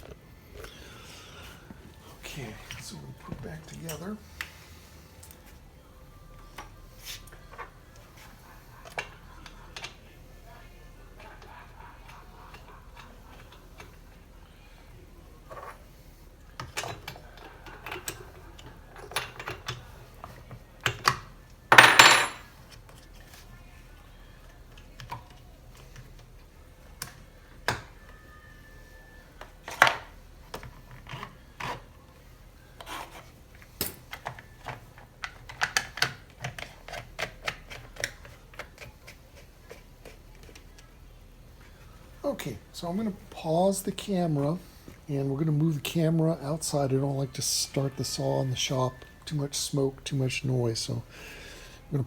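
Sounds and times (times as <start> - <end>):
tools and metal parts clinking: 21.7 - 22.6.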